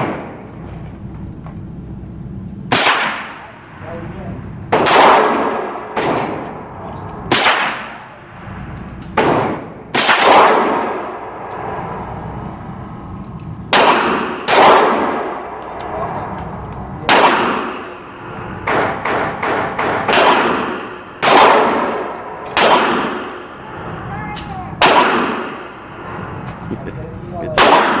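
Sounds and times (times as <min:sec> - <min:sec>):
gunshots with metallic clang: 0:02.7 - 0:03.5, 0:04.7 - 0:06.6, 0:07.3 - 0:11.2, 0:13.7 - 0:16.3, 0:17.1 - 0:18.0, 0:18.6 - 0:23.4, 0:24.8 - 0:25.7, 0:27.6 - 0:28.0.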